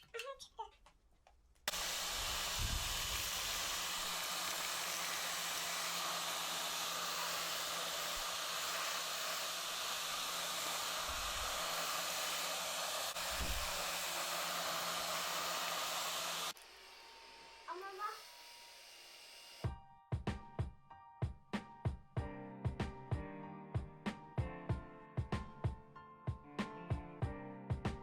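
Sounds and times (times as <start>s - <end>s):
electric appliance whooshing: 1.7s - 19.7s.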